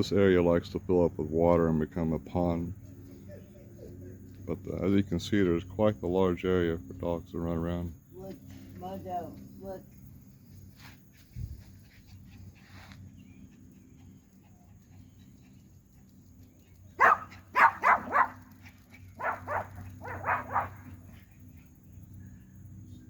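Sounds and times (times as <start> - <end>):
dog barking: 17.0 - 18.4, 19.2 - 21.0.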